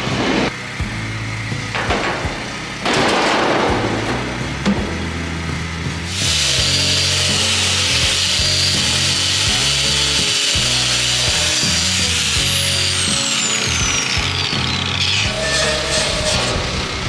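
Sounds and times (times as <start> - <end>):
high whine sliding down: 1.6 - 17.0
angle grinder grinding steel: 3.7 - 17.0.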